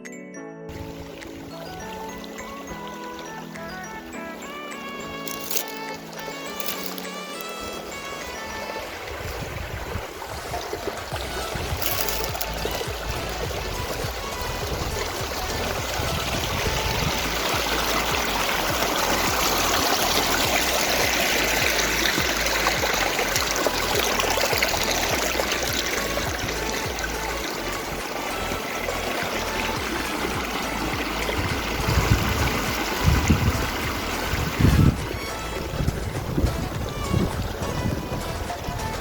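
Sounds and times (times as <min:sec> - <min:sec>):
stream water flowing: 0:00.7 - 0:39.0
wind buffeting microphone: 0:08.2 - 0:39.0.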